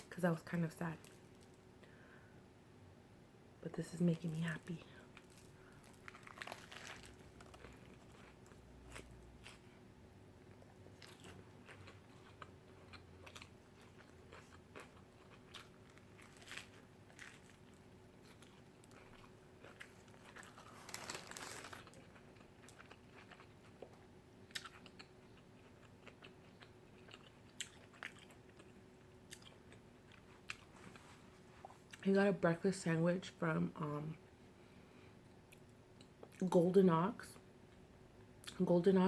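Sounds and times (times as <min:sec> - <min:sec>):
person chewing and biting: 0:05.1 - 0:09.7, 0:10.5 - 0:32.0
crunch or rustle: 0:05.2 - 0:09.6, 0:13.8 - 0:23.4.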